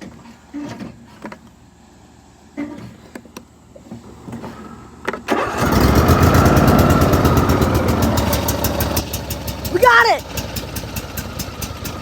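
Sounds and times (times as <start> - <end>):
riding lawn mower engine running: 5.0 - 12.0.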